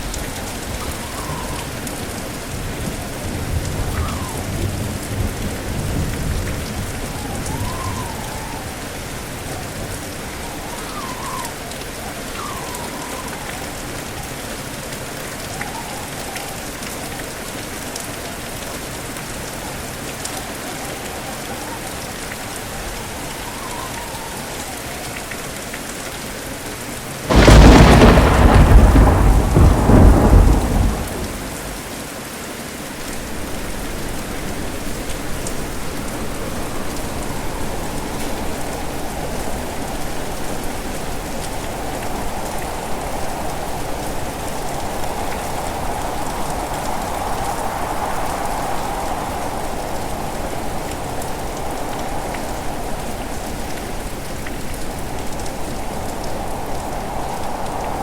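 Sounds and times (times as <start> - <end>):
wind howling: 0.0 - 17.1, 18.8 - 25.5, 27.3 - 32.0, 32.8 - 58.0
heavy rain: 0.0 - 58.0
loud thunderclap rumbling: 27.3 - 31.9.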